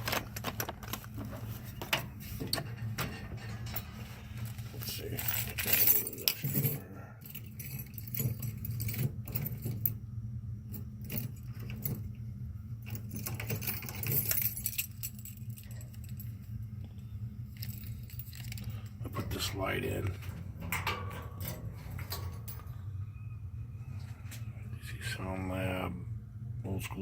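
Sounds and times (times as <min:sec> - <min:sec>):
metal tools clinking in drawer: 0:00.0 - 0:10.0, 0:12.9 - 0:16.3, 0:17.6 - 0:22.8
steady low hum: 0:00.0 - 0:27.0.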